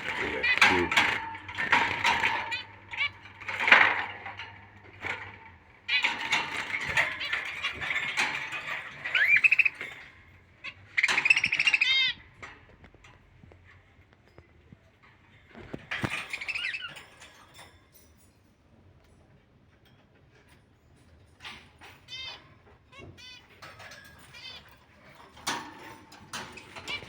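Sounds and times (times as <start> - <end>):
budgerigars chattering and chirping: 0.0 - 3.7, 5.9 - 9.9, 10.6 - 12.2.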